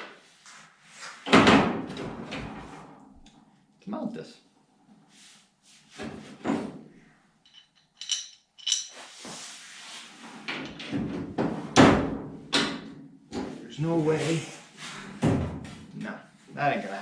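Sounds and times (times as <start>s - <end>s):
metal parts clunking: 7.5s - 9.1s
metallic jingle: 7.5s - 9.1s.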